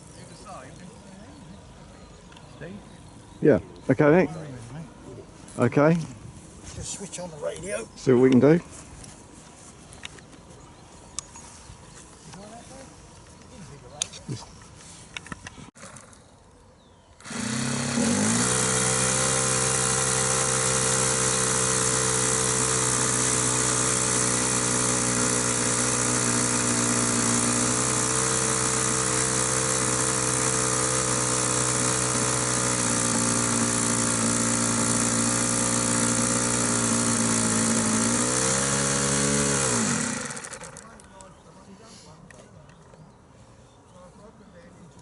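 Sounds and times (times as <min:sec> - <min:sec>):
model aircraft motor and propeller: 0:17.2 - 0:41.4.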